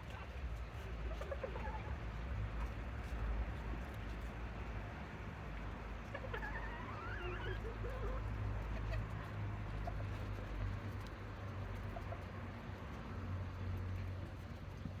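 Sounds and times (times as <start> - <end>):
chicken call: 6.2 - 8.2.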